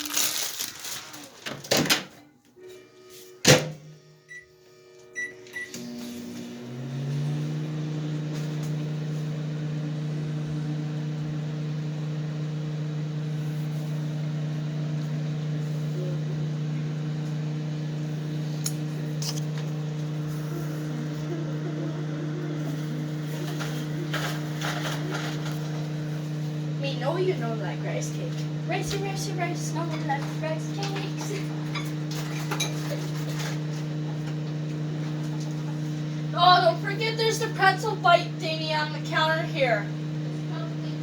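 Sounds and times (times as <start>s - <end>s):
microwave humming: 0.0s - 41.0s
keypad beeps: 5.2s - 5.8s.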